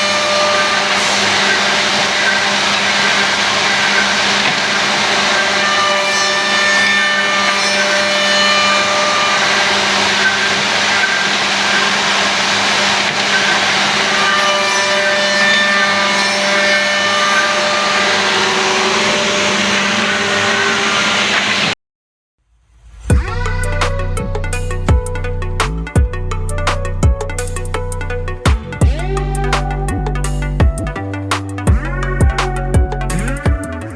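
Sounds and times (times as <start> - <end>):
milling machine whirring: 0.0 - 21.7.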